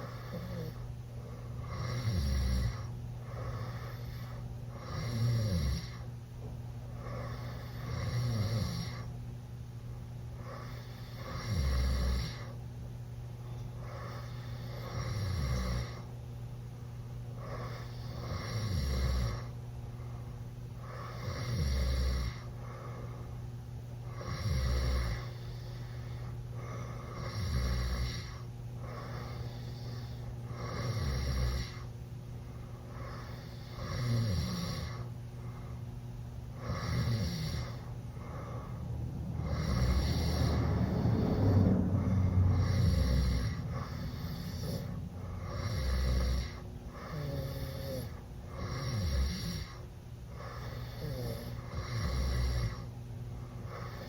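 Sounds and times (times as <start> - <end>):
boy snoring loudly: 1.6 - 6.0, 7.0 - 9.1, 10.4 - 12.6, 13.9 - 16.1, 17.4 - 19.5, 20.9 - 22.4, 24.2 - 25.4, 27.1 - 31.9, 33.0 - 35.0, 36.6 - 49.8, 50.4 - 52.9.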